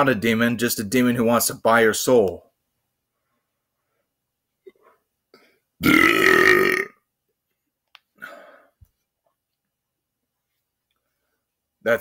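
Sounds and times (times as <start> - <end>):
man belching: 5.8 - 7.0
breathy sound: 8.2 - 8.8.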